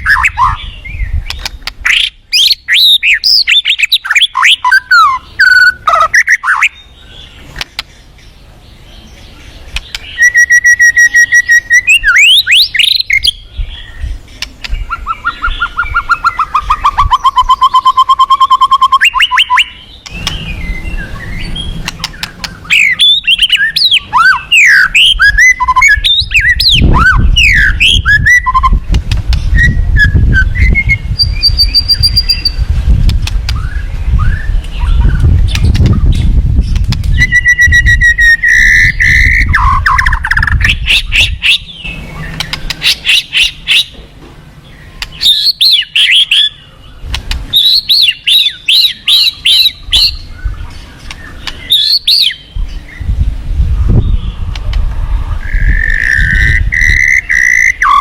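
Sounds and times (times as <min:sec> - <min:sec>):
bird singing whistled phrases: 0:00.0 - 0:06.9, 0:09.8 - 0:14.1, 0:14.7 - 0:28.8, 0:29.4 - 0:32.6, 0:33.5 - 0:36.3, 0:37.1 - 0:43.9, 0:45.1 - 0:46.8, 0:47.5 - 0:52.5, 0:55.4 - 0:58.0
low rumbling noise: 0:19.7 - 0:45.4, 0:52.4 - 0:58.0.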